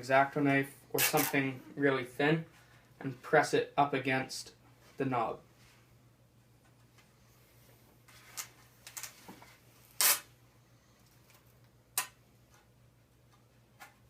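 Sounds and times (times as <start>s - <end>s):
tape ripping: 1.0s - 1.4s, 10.0s - 10.3s
tape rustling and scraping: 8.0s - 10.3s.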